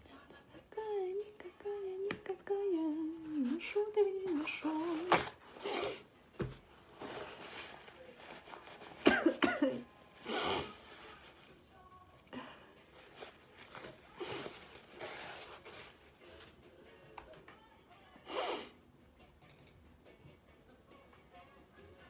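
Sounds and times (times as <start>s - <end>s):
breathing: 12.3s - 12.9s
woman sneezing: 18.3s - 18.8s.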